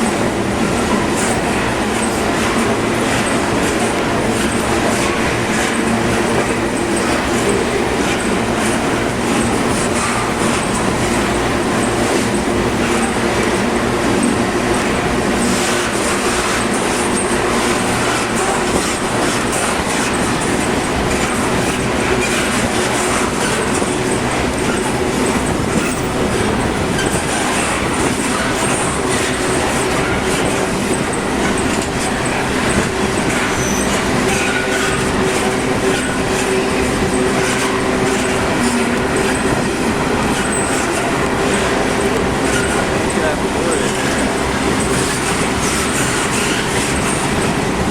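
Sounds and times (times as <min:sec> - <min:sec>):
train wheels clattering over rails: 0:00.0 - 0:47.9.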